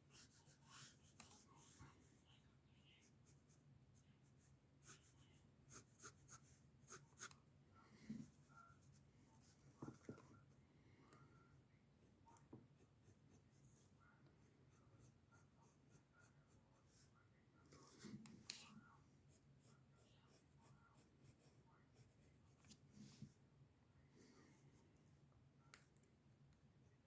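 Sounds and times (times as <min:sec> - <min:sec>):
pencil scratching on paper: 0:00.1 - 0:02.2, 0:04.3 - 0:07.4, 0:12.4 - 0:17.1, 0:19.3 - 0:22.8.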